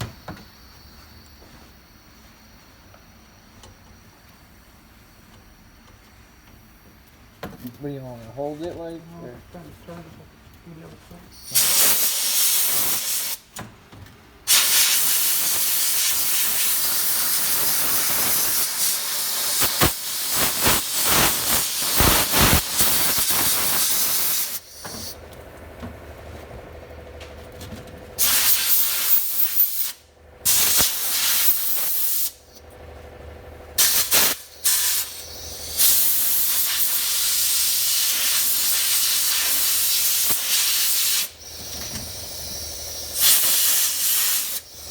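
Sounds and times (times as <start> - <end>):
sandblaster hissing: 11.3 - 13.5, 14.4 - 25.2, 28.2 - 32.6, 33.8 - 44.9.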